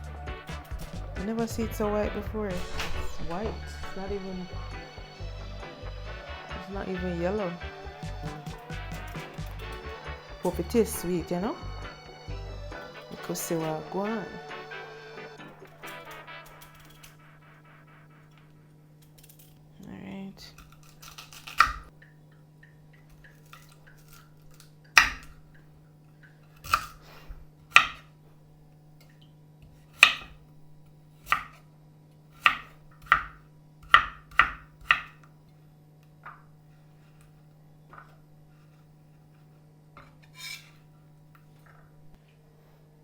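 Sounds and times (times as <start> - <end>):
steady low hum: 0.0 - 20.8
knife chopping on cutting board: 20.6 - 21.9, 25.0 - 25.4, 27.7 - 28.1, 29.9 - 30.4, 31.2 - 31.6, 32.4 - 35.2.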